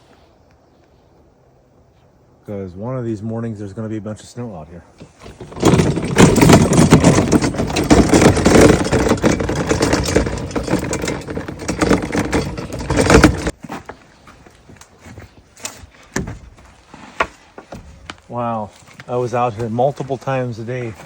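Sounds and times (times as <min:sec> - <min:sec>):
dense rattling and rustling: 0:04.9 - 0:21.0.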